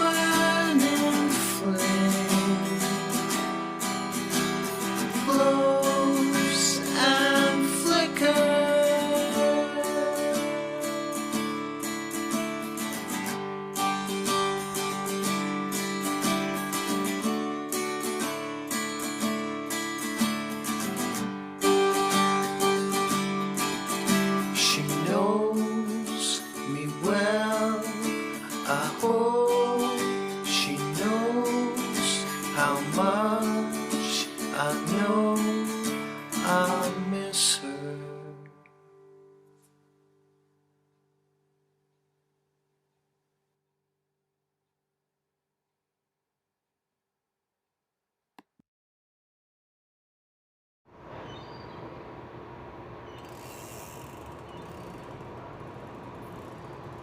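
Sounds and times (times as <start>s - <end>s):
acoustic guitar strumming: 0.0s - 40.3s
faint steady hum: 51.0s - 57.0s
mechanical rumbling noise: 51.0s - 57.0s.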